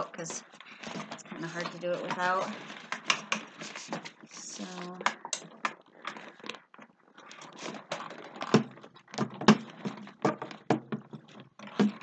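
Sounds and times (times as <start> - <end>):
frame parts clicking and rustling: 0.0 - 12.0.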